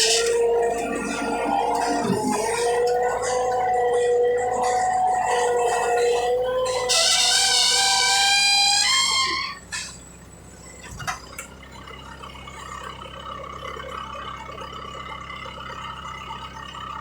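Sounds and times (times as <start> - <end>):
loud gliding pitch sound: 0.0 - 9.6
steady engine drone: 0.0 - 17.0.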